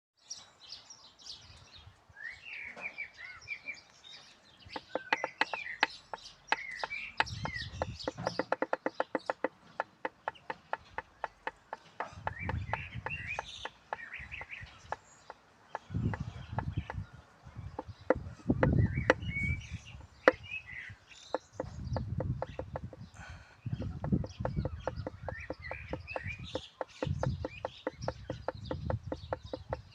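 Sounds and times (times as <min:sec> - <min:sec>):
birds chirping: 0:00.2 - 0:29.9
sharp knocks: 0:04.8 - 0:15.0, 0:15.7 - 0:17.0, 0:17.7 - 0:20.5, 0:21.3 - 0:23.1, 0:23.8 - 0:29.9.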